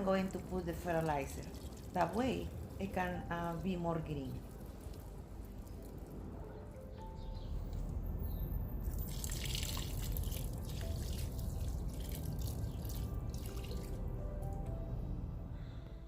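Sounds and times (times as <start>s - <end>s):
liquid pouring onto soil: 0.3s - 6.2s, 8.8s - 14.5s.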